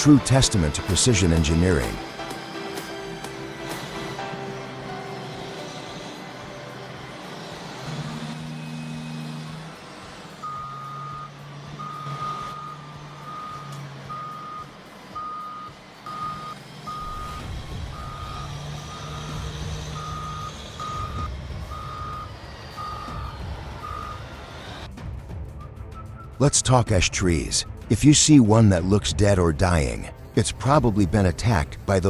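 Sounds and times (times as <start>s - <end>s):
diesel engine running: 0.0s - 24.9s
reversing alarm beeping: 10.4s - 24.8s.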